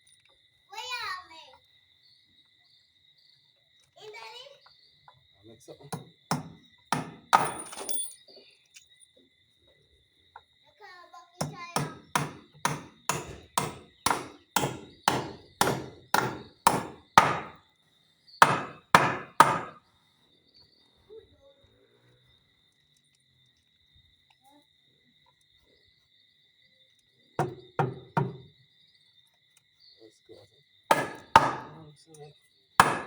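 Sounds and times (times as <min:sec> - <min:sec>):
hammer driving nails: 0:05.9 - 0:08.1, 0:11.4 - 0:17.6, 0:18.4 - 0:19.8, 0:27.4 - 0:28.5, 0:30.9 - 0:31.8, 0:32.8 - 0:33.0.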